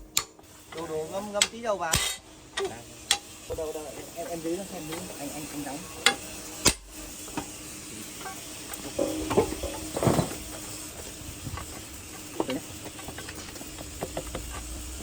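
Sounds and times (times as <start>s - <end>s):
steady hiss: 0.0s - 15.0s
hand tools clicking and knocking: 8.7s - 10.6s.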